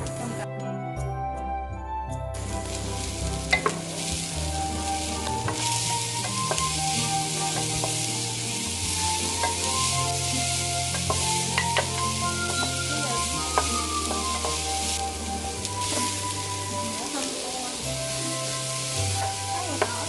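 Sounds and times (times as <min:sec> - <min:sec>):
background music: 0:00.0 - 0:20.0
food sizzling in a pan: 0:02.4 - 0:20.0.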